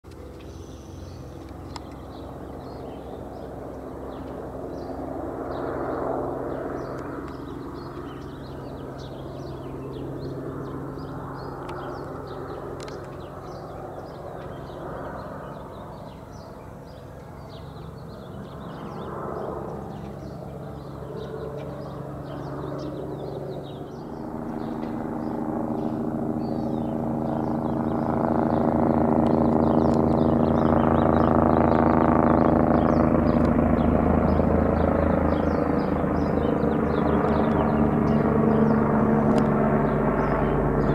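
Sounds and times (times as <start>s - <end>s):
helicopter drone overhead: 0.0s - 40.9s.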